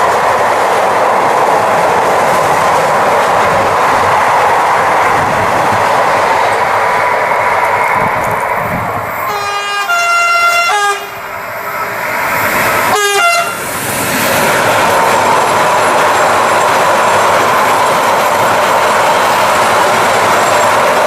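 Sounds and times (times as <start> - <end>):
freight train on rails: 0.0 - 21.0
train horn blast: 9.3 - 11.2, 12.9 - 13.6.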